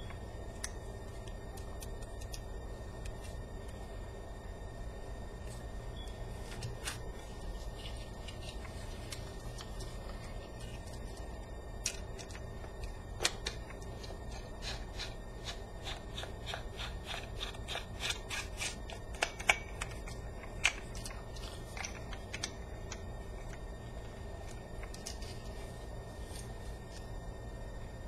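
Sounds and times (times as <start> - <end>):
faint low hum: 0.0 - 28.0.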